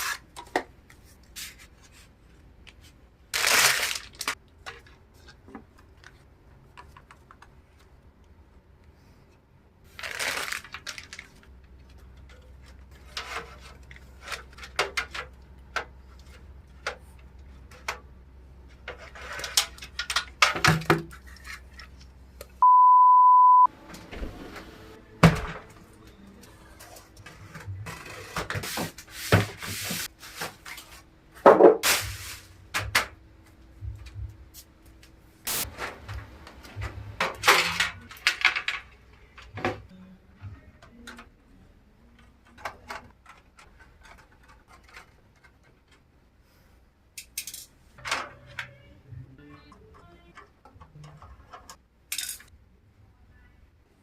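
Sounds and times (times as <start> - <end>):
steady beep: 22.6 - 23.7
computer parts clicking and rustling: 42.2 - 46.2.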